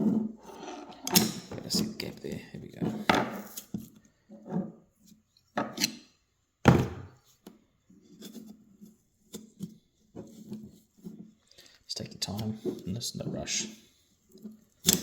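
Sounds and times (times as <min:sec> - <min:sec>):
knocks and handling clatter: 0:00.0 - 0:04.8.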